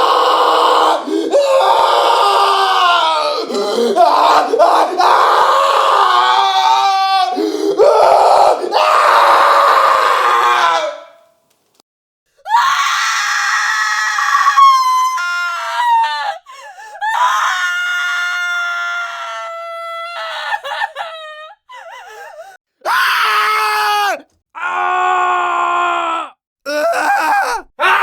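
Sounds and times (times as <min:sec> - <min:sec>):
woman screaming: 0:12.5 - 0:28.0.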